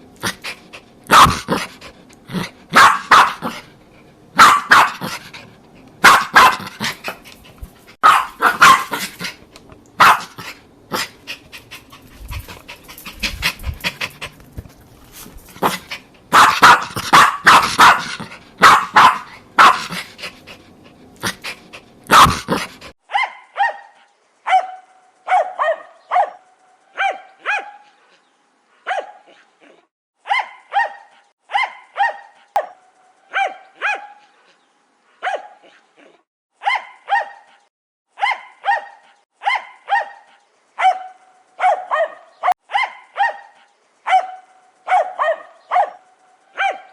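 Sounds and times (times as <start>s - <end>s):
dog barking: 1.1s - 1.7s, 2.7s - 3.6s, 4.4s - 5.2s, 6.0s - 6.9s, 8.0s - 9.2s, 10.0s - 11.1s, 15.6s - 20.1s, 22.1s - 28.0s, 28.8s - 29.4s, 30.2s - 34.3s, 35.2s - 35.8s, 36.6s - 37.6s, 38.2s - 46.9s.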